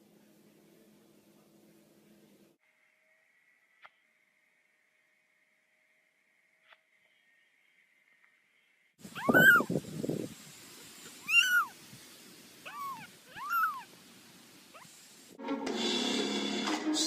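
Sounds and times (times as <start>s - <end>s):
cat meowing: 9.1s - 9.8s, 11.2s - 11.8s, 12.6s - 13.9s
music: 15.4s - 17.0s.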